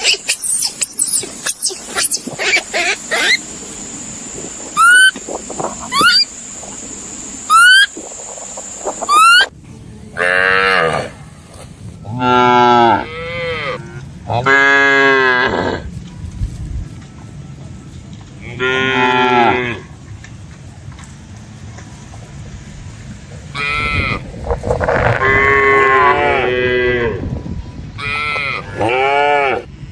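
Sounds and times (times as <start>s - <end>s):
short rising whistle-like calls: 0.0s - 3.4s, 4.6s - 5.2s, 5.8s - 6.4s, 7.4s - 9.5s
cow mooing: 10.2s - 11.2s, 12.1s - 15.9s, 18.4s - 19.9s, 24.8s - 27.2s, 28.0s - 29.7s.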